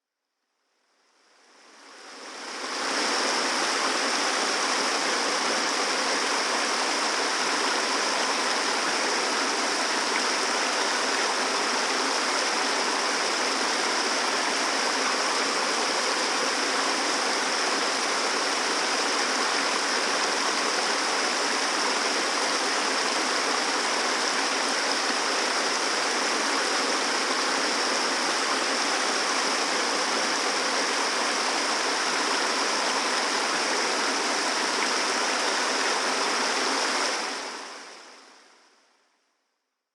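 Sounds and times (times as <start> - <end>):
water rushing over waterfall: 1.8 - 38.2.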